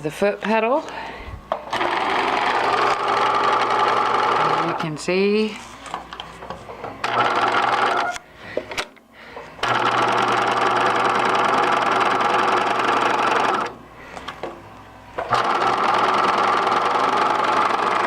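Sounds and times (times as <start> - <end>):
sewing machine running: 1.7 - 4.9, 7.0 - 8.2, 9.6 - 13.8, 15.2 - 18.0.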